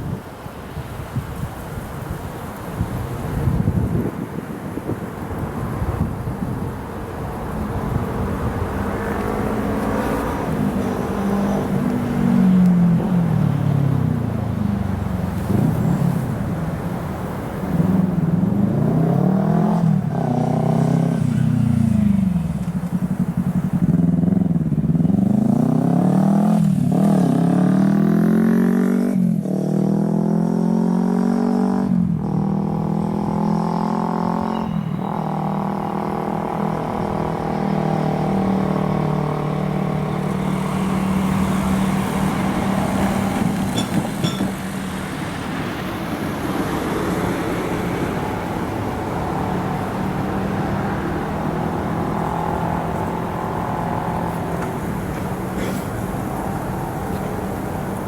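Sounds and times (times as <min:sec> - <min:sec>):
wheels knocking: 0:39.8 - 0:45.8.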